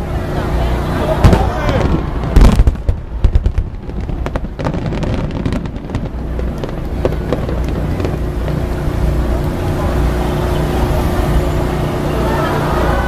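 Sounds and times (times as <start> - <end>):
low rumble: 0.0 - 13.0
fireworks crackling pops: 1.2 - 10.2.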